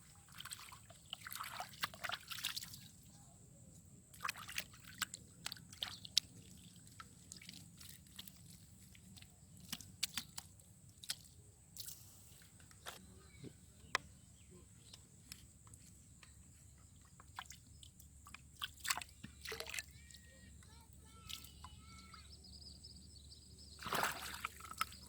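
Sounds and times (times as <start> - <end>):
water dripping and splashing: 0.2 - 3.0, 4.1 - 12.0, 16.9 - 22.2, 23.8 - 25.0.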